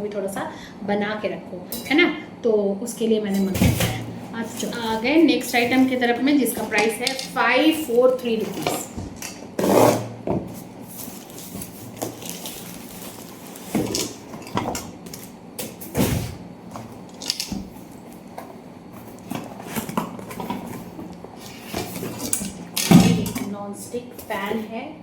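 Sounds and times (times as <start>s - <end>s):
packaging rustling: 10.5s - 15.9s, 16.7s - 23.0s.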